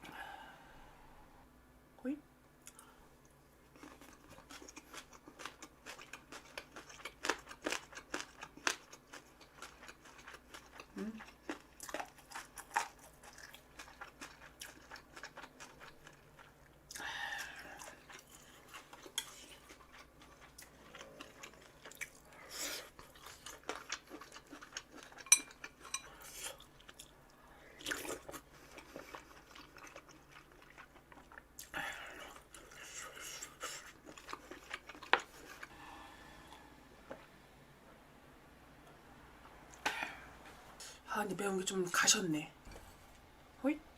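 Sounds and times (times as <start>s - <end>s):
chewing and crunching: 2.7s - 35.8s.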